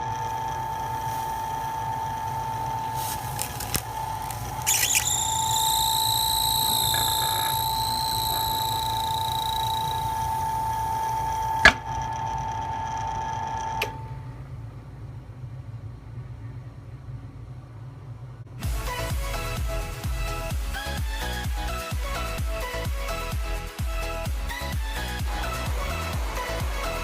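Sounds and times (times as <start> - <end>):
electric drill whining: 0.0 - 13.7
higher wavering whine: 0.0 - 14.4.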